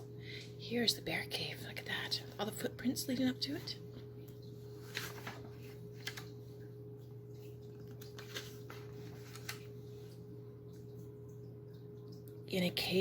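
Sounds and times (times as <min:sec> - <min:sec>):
paper book clicks and rustles: 0:04.8 - 0:06.4, 0:07.8 - 0:10.1.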